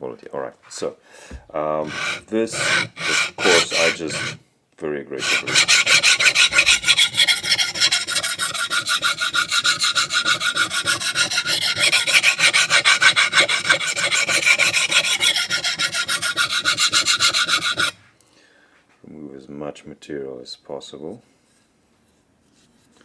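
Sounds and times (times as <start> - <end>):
knife scraping on sharpening stone: 1.8 - 4.4, 5.2 - 18.0.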